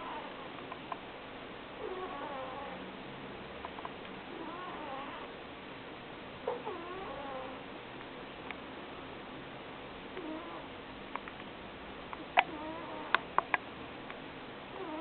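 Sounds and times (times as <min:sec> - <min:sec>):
pet snoring with squeaky whistle: 0:01.8 - 0:02.8.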